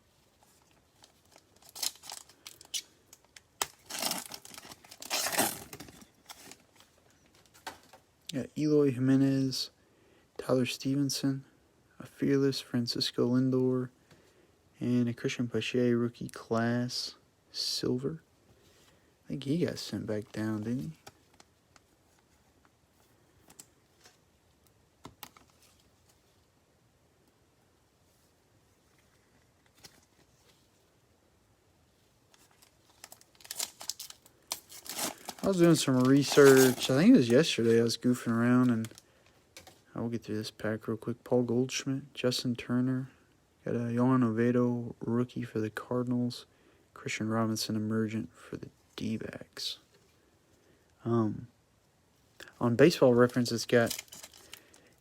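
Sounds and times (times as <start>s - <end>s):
wrapper rustling: 0.3s - 7.9s, 32.3s - 39.8s, 53.3s - 55.0s
wrapper tearing: 1.0s - 6.8s, 32.4s - 39.0s, 53.6s - 54.9s
wrapper snapping: 1.4s - 6.6s, 32.4s - 37.3s, 53.8s - 54.8s.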